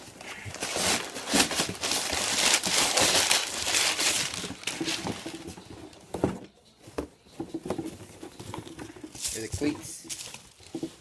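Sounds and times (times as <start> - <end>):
packaging crinkling: 0.0 - 5.7.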